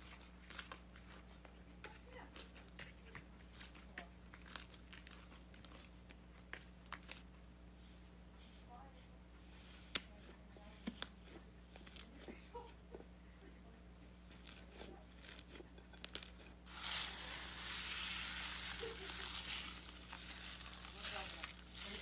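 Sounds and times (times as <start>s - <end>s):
slime squishing noise: 16.4s - 22.0s.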